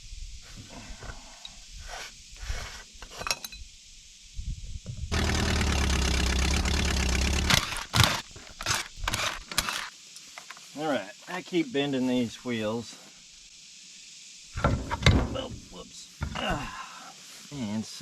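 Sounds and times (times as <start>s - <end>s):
loud machine running: 5.1s - 9.9s.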